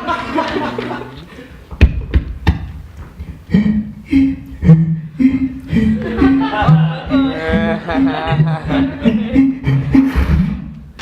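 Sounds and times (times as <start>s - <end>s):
beatboxing voice-like noises: 3.2s - 10.9s
hummed bass notes: 3.2s - 11.0s.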